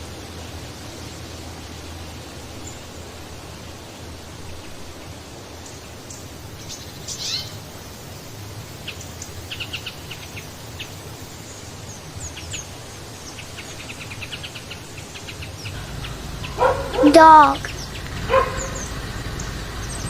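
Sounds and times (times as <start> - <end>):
outdoor background hiss: 0.0 - 20.0
small birds chirping: 4.4 - 20.0.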